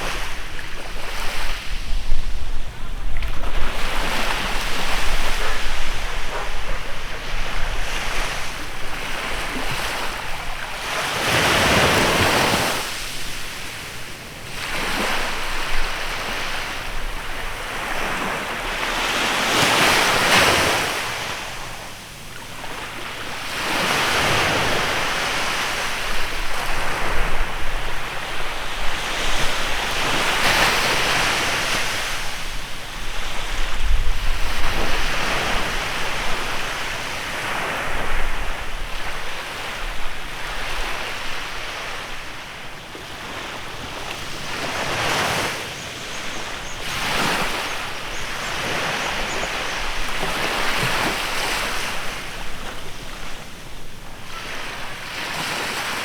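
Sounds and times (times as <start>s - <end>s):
wind rumbling on microphone: 0.0s - 13.6s, 24.4s - 41.5s
waves breaking on a beach: 0.0s - 56.0s.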